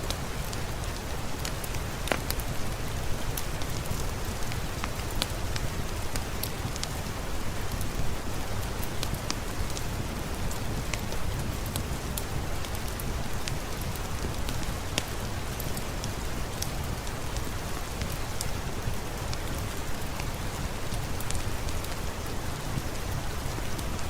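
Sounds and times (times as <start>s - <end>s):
steady rainfall: 0.0s - 24.0s
wood fire crackling: 0.0s - 24.0s.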